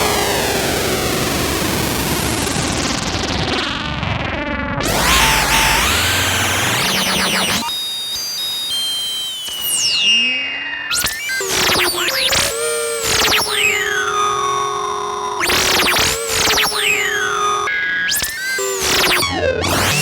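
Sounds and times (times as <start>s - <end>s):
synthesizer wobbling sound: 4.8s - 7.7s
synthesizer noise wash: 4.8s - 7.8s
high synthesizer tones sliding down: 4.8s - 20.0s.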